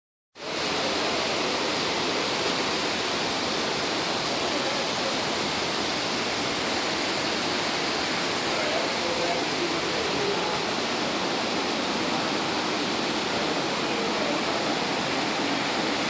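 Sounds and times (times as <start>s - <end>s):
floodwater rushing: 0.4s - 16.0s.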